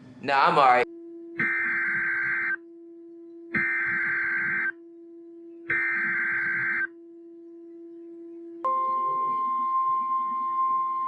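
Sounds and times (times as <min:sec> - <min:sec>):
steady low hum: 0:00.0 - 0:08.7
buzzy digital data screeches: 0:01.4 - 0:02.6, 0:03.6 - 0:04.8, 0:05.7 - 0:06.9.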